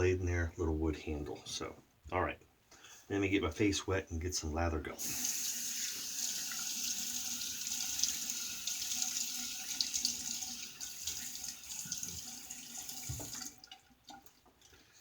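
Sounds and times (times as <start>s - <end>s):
tap water running into sink: 5.0s - 14.7s.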